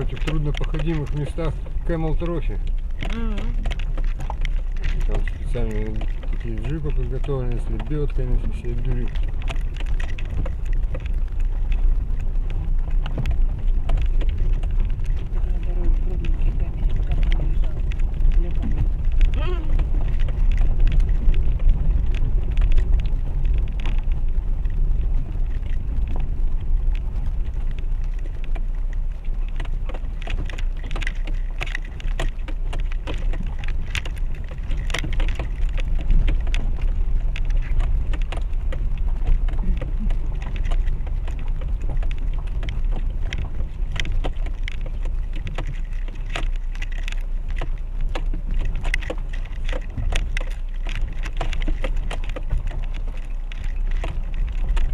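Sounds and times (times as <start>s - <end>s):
car rumbling on rough track: 0.0s - 54.9s
stones knocking under tyres: 0.0s - 54.9s
suspension working over bumps: 0.0s - 54.9s.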